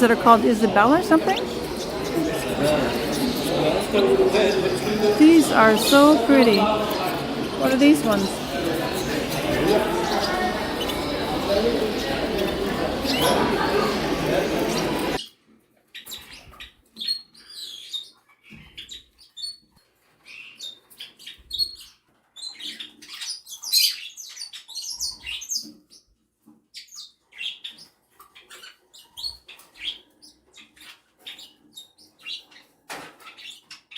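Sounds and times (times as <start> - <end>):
small birds chirping: 0.0 - 15.4, 16.0 - 33.9.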